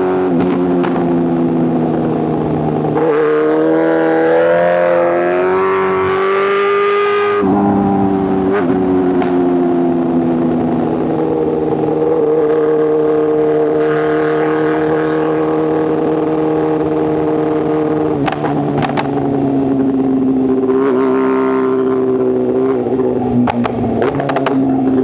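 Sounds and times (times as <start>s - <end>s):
motorcycle engine running: 0.0s - 25.0s
exhaust pops: 18.1s - 19.4s, 23.4s - 24.8s.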